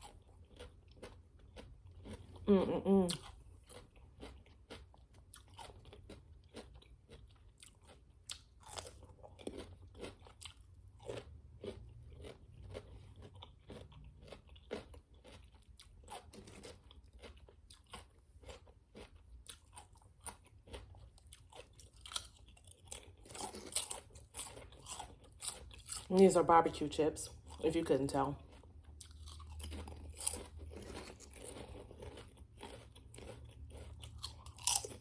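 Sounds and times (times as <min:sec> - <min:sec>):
crunching and chewing chips: 0:00.0 - 0:35.0.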